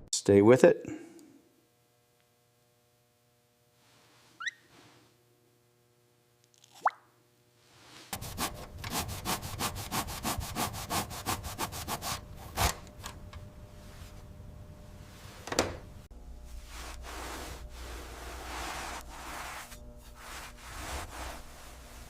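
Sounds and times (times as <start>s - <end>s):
hand rubbing rusted metal: 16.6s - 22.0s.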